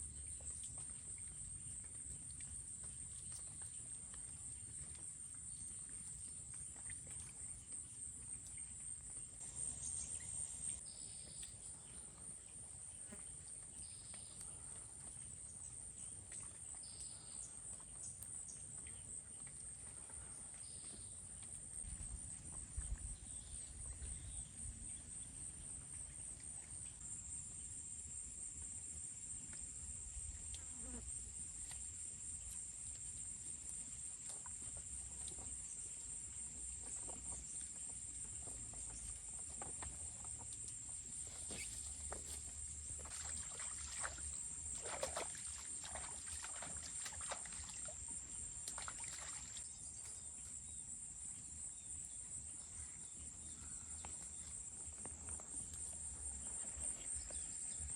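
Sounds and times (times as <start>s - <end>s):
insect chorus trilling: 34.3s - 57.9s.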